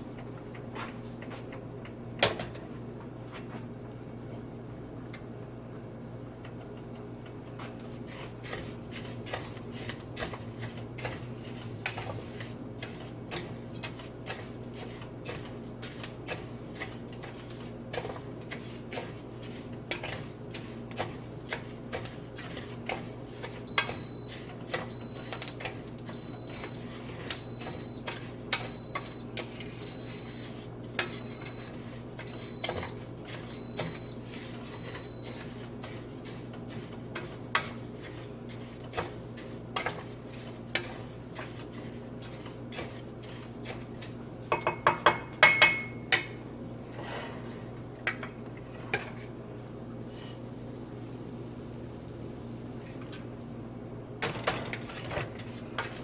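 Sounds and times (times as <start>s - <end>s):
rice crackling in hot oil: 7.7s - 44.5s.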